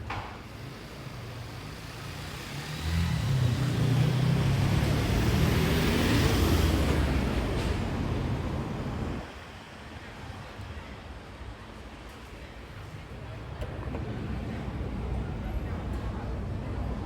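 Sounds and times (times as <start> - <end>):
car engine rumble: 0.4 - 9.3, 13.1 - 16.5.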